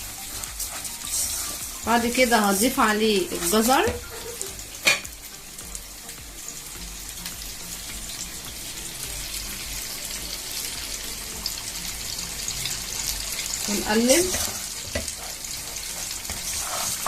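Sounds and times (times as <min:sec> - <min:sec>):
rice and onion sizzling in oil: 0:00.0 - 0:17.0.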